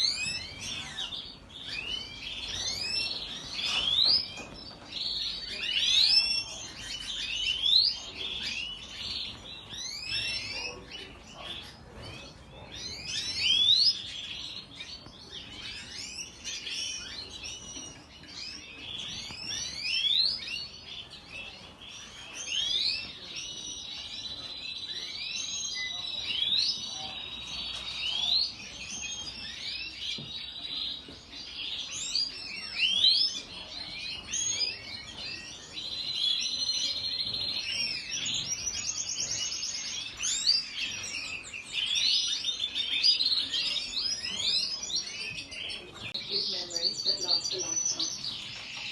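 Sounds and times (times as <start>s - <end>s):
songbirds chirping and singing: 0.0s - 48.9s.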